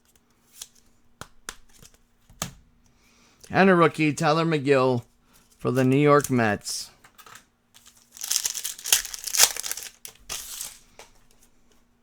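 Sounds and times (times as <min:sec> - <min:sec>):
foil wrapper crinkling: 0:07.8 - 0:10.8.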